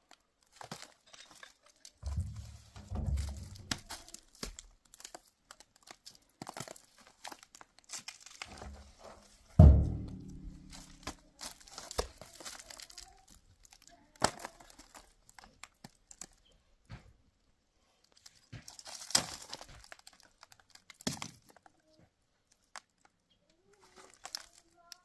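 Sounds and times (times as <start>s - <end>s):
crinkling rustles: 0.0s - 16.6s, 17.9s - 25.0s
sharp handling knocks: 2.0s - 4.6s, 8.5s - 11.2s.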